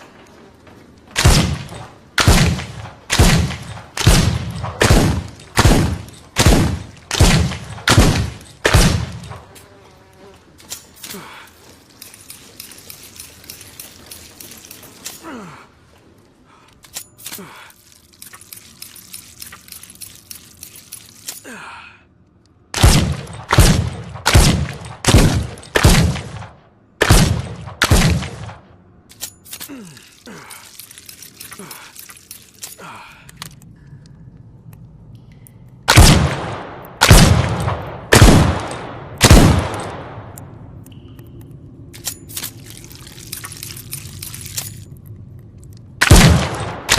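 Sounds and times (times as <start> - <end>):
mechanical clicking and rattling: 10.6 - 15.2, 16.7 - 21.5, 28.5 - 35.8, 41.9 - 46.8
pistol shots with echo: 35.9 - 40.4.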